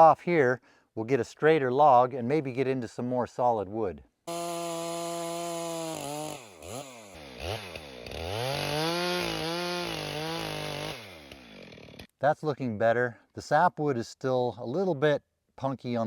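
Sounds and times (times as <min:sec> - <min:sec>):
chainsaw cutting log: 0:04.3 - 0:12.1.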